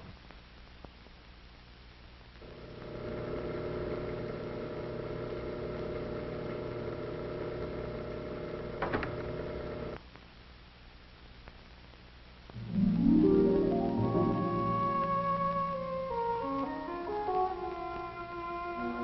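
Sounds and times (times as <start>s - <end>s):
machine motor hum: 2.4s - 10.0s.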